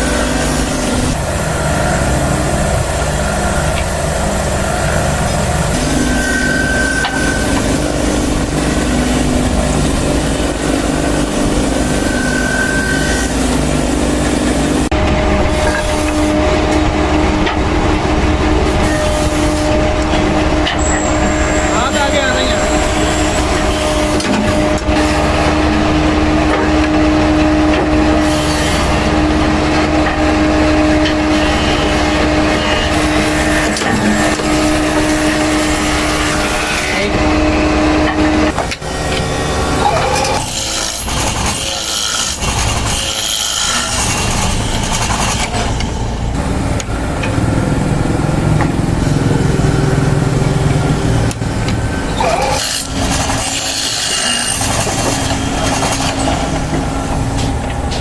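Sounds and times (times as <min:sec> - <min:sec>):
machinery humming tone: 0:00.0 - 0:58.0
mechanical noise: 0:00.0 - 0:58.0.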